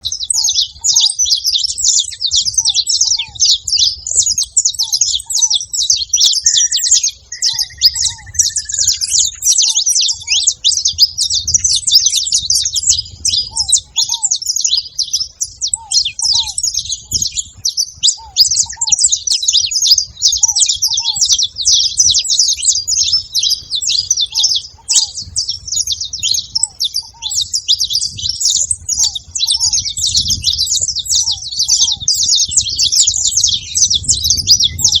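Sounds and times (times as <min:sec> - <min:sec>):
finches chirping: 0:00.0 - 0:35.0.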